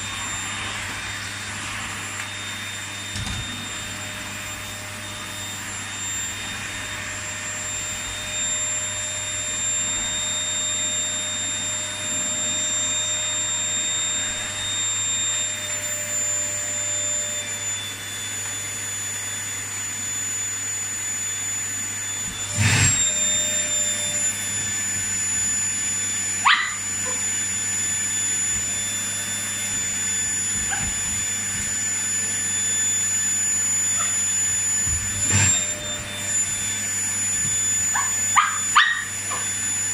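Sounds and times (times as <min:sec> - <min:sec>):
vacuum cleaner whining: 0:00.0 - 0:39.9
dog yelping: 0:26.4 - 0:27.2, 0:37.9 - 0:39.6.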